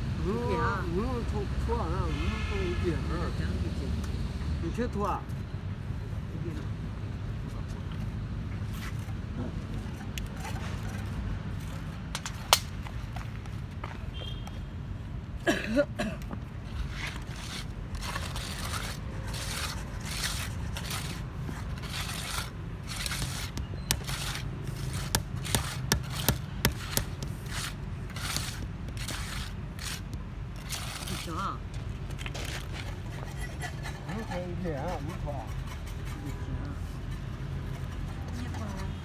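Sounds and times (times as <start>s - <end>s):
hand tools scraping on paving: 1.8s - 3.5s, 8.6s - 12.5s, 16.6s - 39.0s
sharp knocks: 22.9s - 31.0s.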